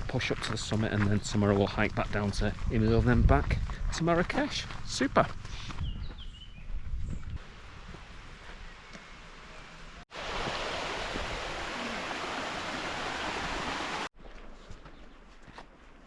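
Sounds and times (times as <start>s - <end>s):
mountain stream rushing: 10.1s - 14.1s.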